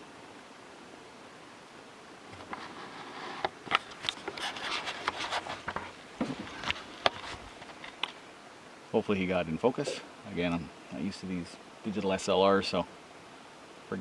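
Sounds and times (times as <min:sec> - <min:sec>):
handling noise rubbing and clicks: 0:02.4 - 0:08.2.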